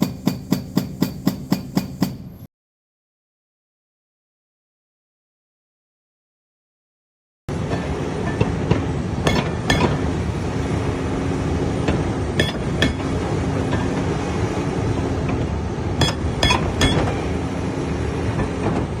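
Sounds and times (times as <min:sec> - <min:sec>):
excavator engine running: 0:00.0 - 0:02.4
ringing metal clanks: 0:16.0 - 0:17.0.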